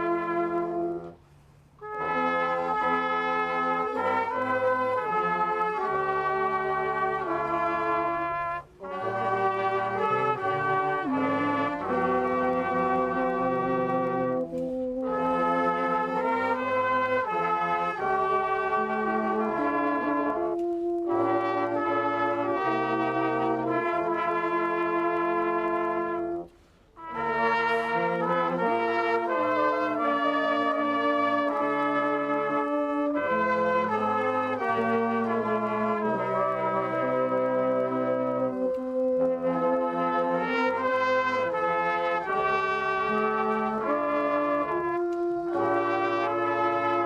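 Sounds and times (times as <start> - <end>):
brass band playing a hymn: 0.0 - 47.0.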